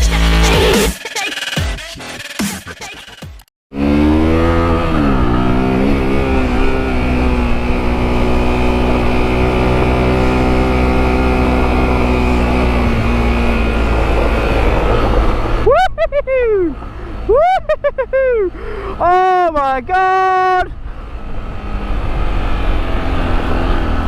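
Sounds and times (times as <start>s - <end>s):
motorcycle engine running: 3.7s - 15.7s.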